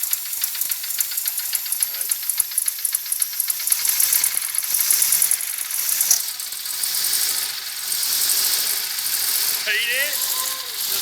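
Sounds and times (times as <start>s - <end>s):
fast mechanical rattle: 0.0s - 11.0s
hiss: 0.0s - 11.0s.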